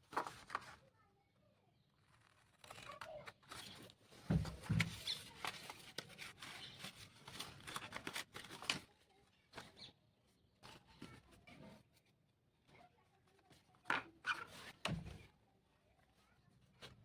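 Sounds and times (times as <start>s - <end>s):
paper taps and rustles: 0.1s - 0.8s, 2.1s - 9.8s, 13.4s - 15.3s.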